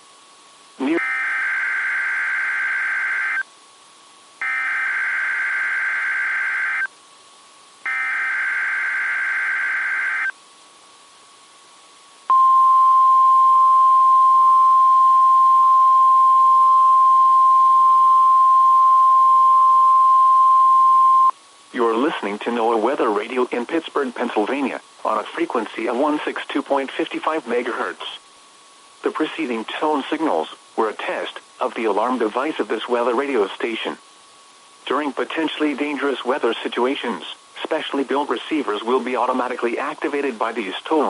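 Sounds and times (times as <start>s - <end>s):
steady warning alarm tone: 0.9s - 3.4s, 4.4s - 6.9s, 7.9s - 10.3s
digital data bursts: 7.9s - 10.3s.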